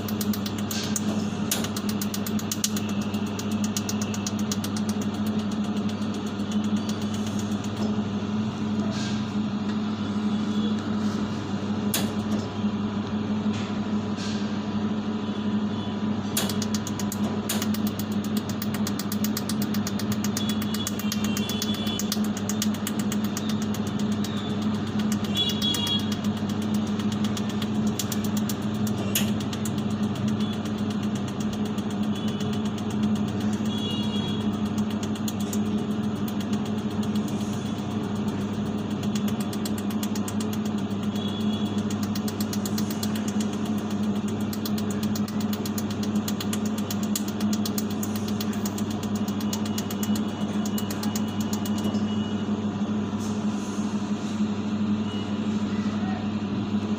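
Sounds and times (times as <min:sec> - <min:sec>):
sharp clicks: 0:00.0 - 0:08.0, 0:16.4 - 0:52.2
machine electrical hum: 0:00.0 - 0:56.9.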